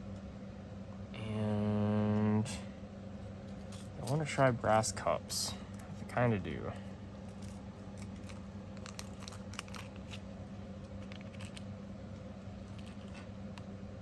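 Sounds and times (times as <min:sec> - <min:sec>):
steady low hum: 0:00.0 - 0:14.0
small metal parts clicking: 0:07.3 - 0:10.2, 0:11.0 - 0:11.6.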